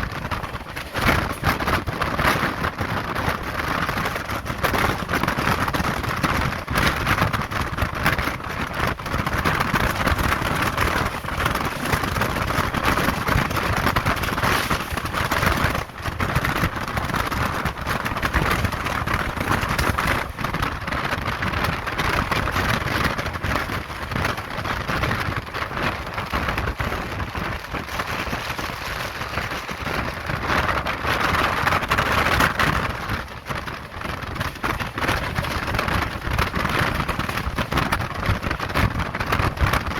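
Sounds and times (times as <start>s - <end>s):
train wheels rushing on rail: 0.0s - 24.6s.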